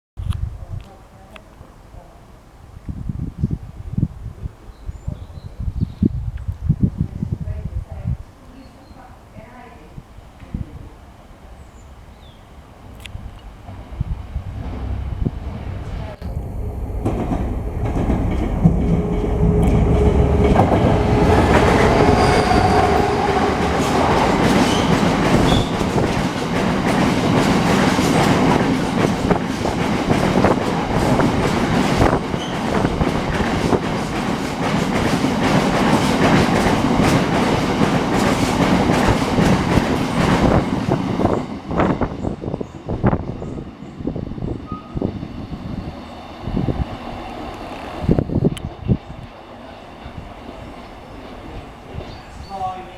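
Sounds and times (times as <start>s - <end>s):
locomotive engine droning: 11.1s - 26.2s
wagons clattering over rail joints: 12.9s - 41.4s.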